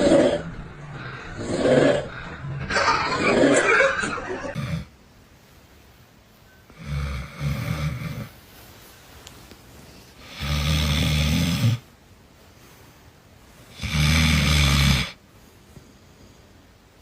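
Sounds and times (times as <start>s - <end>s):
person snoring: 0.0s - 2.5s, 4.5s - 4.9s, 6.7s - 8.3s, 10.2s - 11.8s, 13.7s - 15.2s.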